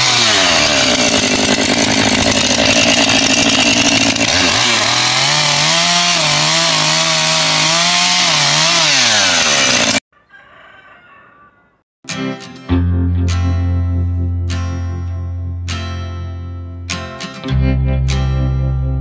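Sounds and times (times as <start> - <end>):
chainsaw cutting wood: 0.0 - 10.1.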